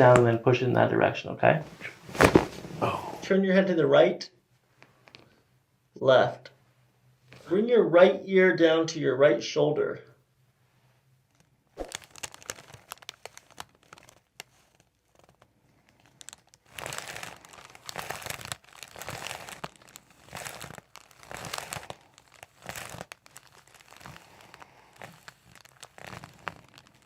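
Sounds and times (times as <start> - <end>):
rustling against clothing and table: 1.7 - 2.8, 11.8 - 27.0.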